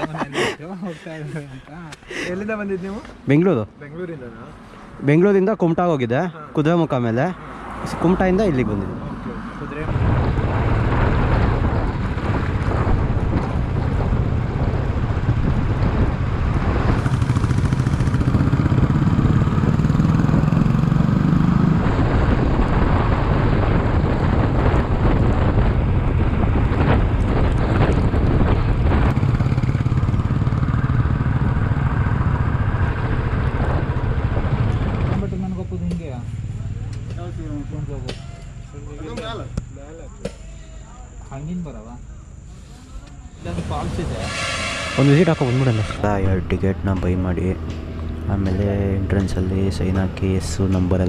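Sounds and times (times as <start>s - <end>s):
motorcycle engine running: 12.2s - 21.1s, 27.7s - 35.3s.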